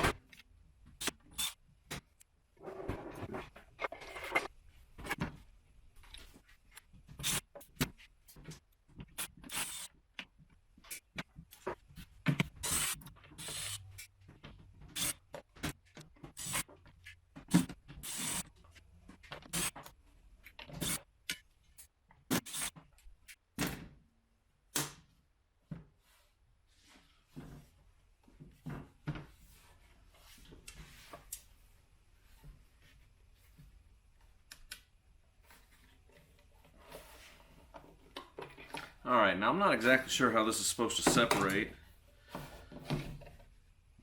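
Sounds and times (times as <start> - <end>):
screwdriver clicks and scrapes: 9.2 - 9.9, 12.4 - 14.1, 16.3 - 17.2, 20.6 - 23.4.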